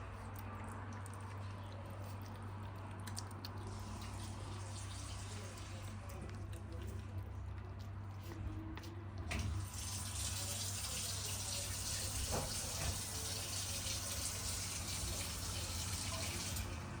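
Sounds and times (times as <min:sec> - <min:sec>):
water running: 0:03.8 - 0:05.9, 0:09.4 - 0:17.0.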